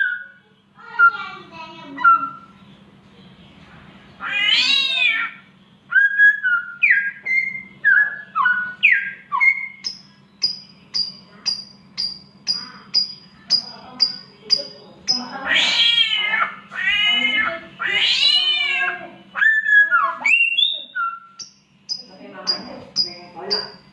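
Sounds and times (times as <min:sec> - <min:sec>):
bird cat-like wavering yowl: 0:04.2 - 0:05.4, 0:15.4 - 0:20.7
bird whistled notes: 0:05.9 - 0:15.3.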